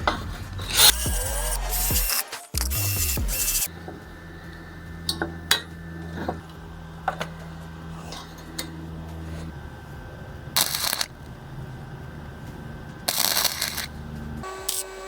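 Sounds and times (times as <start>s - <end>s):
steady low hum: 0.4s - 15.0s
power tool running: 0.7s - 3.7s.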